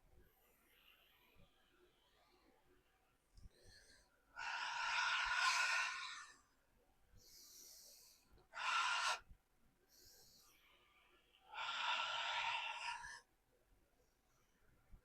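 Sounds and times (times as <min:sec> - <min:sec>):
person breathing deeply: 0:09.9 - 0:13.3.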